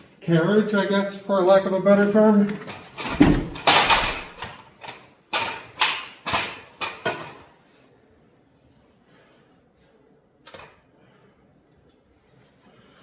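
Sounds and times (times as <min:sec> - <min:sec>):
roller wheel scraping and knocking: 0:00.0 - 0:07.6
click: 0:10.4 - 0:10.7.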